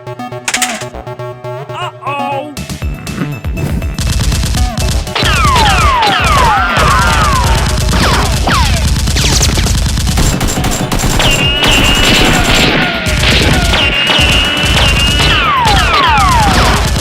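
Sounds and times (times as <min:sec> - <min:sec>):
rapid automatic gunfire: 0:00.5 - 0:00.9, 0:04.0 - 0:17.0.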